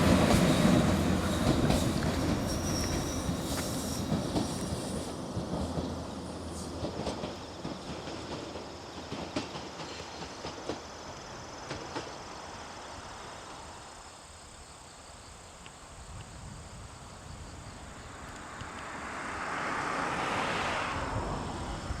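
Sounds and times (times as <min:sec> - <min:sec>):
train wheels clacking: 0:00.0 - 0:12.5
faint insect chirr: 0:00.2 - 0:22.0
broad rushing noise: 0:18.1 - 0:22.0.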